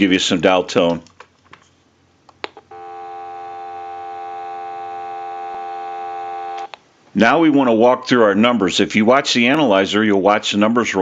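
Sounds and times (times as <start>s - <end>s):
telephone dial tone: 2.6s - 6.8s.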